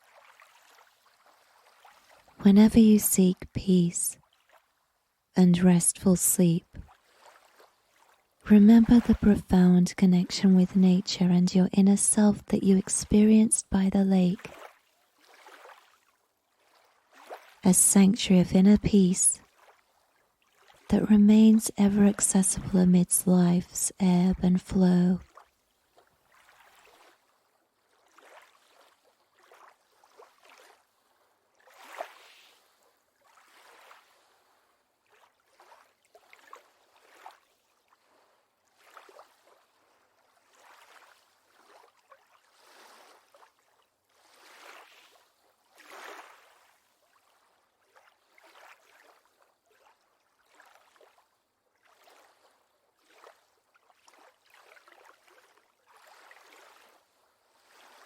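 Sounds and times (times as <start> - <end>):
lake water lapping: 0.0 - 2.9, 6.7 - 9.8, 14.3 - 17.6, 19.4 - 20.9, 24.6 - 58.0
water splashes: 0.0 - 4.8, 5.7 - 58.0.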